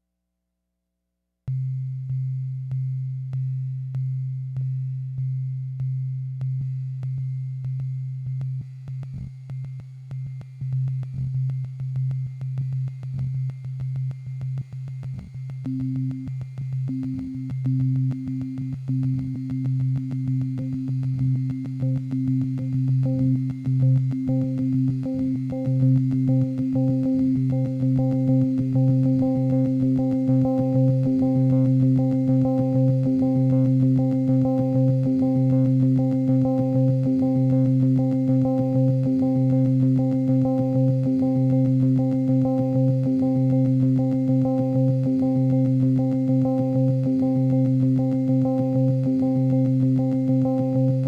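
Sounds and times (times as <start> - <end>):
low synthesizer drone: 15.7 - 51.0.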